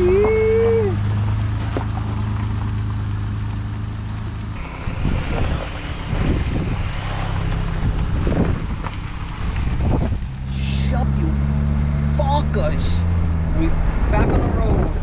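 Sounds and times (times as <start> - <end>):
car driving rough rumble: 0.0 - 15.0
car engine running: 0.0 - 15.0.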